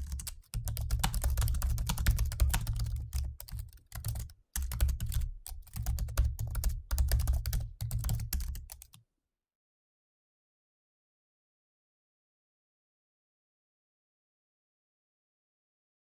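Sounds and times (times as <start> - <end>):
fast typing on laptop keyboard: 0.0 - 9.0.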